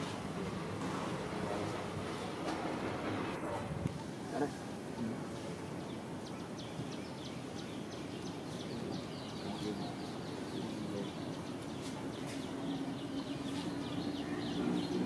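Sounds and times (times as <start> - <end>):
small birds chirping: 5.0 - 15.0.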